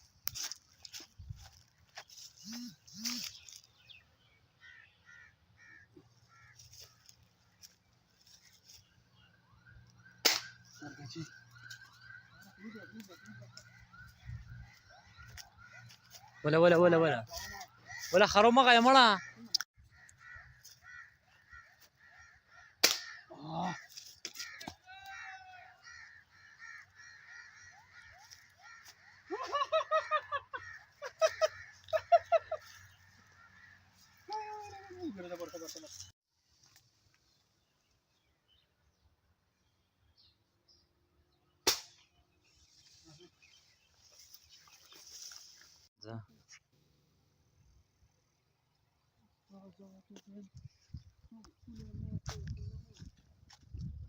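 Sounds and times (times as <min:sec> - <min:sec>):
birds calling: 0:00.0 - 0:36.2, 0:37.0 - 0:45.9.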